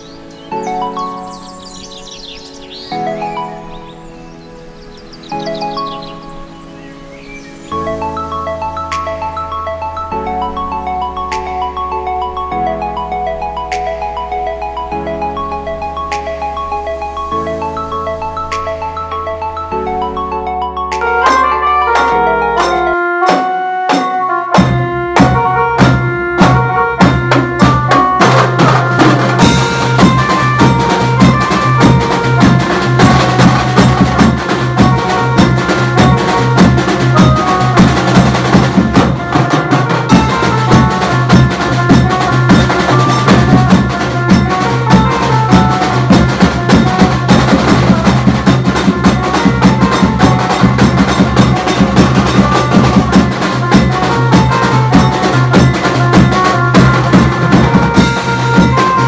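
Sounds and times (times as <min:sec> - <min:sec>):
melody of held notes: 0:00.0 - 0:59.0
fast steady drumming: 0:20.9 - 0:59.0.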